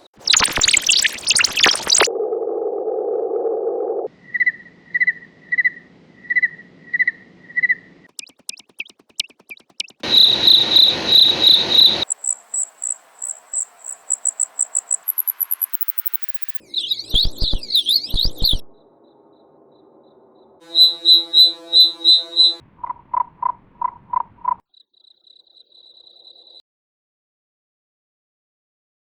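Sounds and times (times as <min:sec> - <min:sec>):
low hum: 0:00.4 - 0:08.1
cricket chirps: 0:10.0 - 0:26.6
high short squeak: 0:20.6 - 0:22.6.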